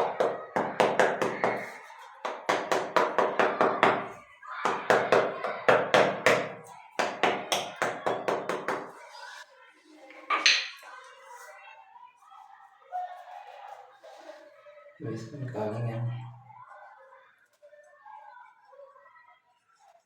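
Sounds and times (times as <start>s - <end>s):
rapid tapping on floor drain: 0.0s - 4.1s.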